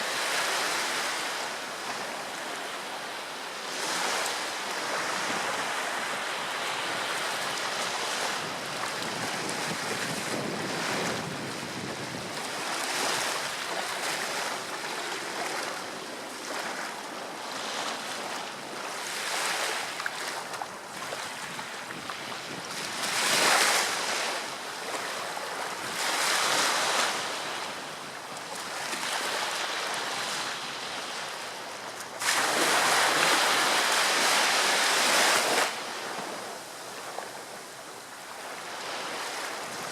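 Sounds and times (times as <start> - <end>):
wind buffeting microphone: 8.0 - 13.4.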